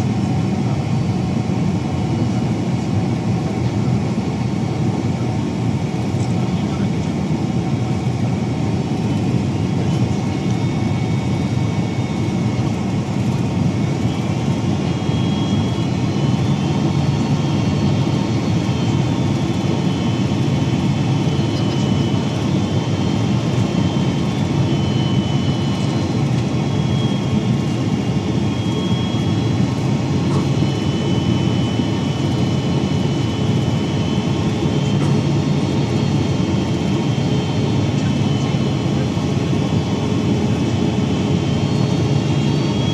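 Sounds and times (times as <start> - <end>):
jet engine cabin rumble: 0.0 - 42.9
faint high whines: 13.8 - 42.9.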